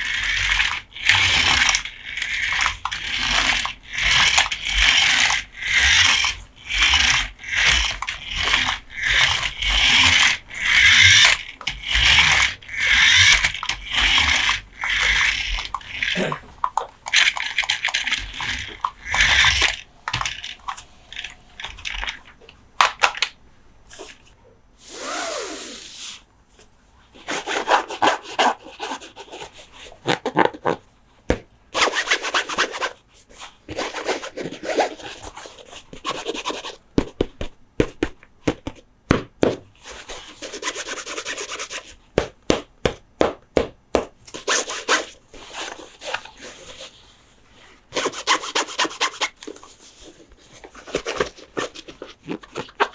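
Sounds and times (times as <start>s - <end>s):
scratching on toy trucks: 0.0s - 26.3s, 27.1s - 43.2s, 44.0s - 52.9s
short gliding whir: 24.8s - 26.2s.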